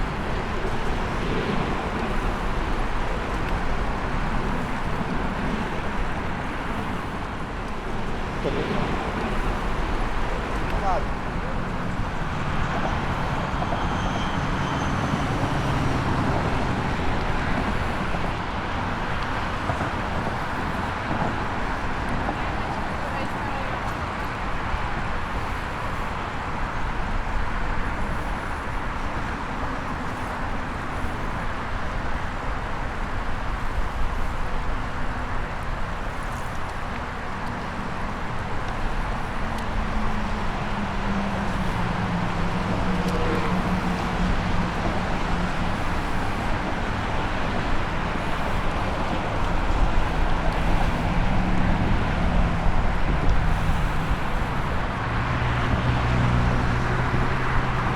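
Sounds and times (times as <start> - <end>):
road traffic noise: 0.0 - 57.9
low engine hum: 27.0 - 57.9.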